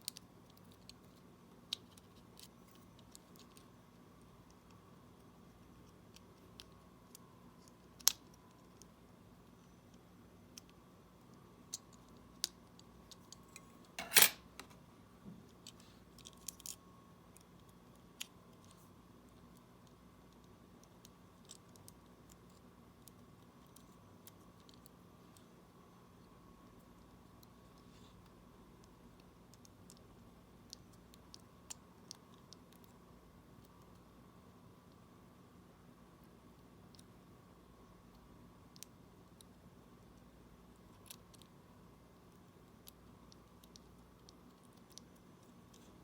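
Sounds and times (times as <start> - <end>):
small parts rattling: 13.5 - 14.7.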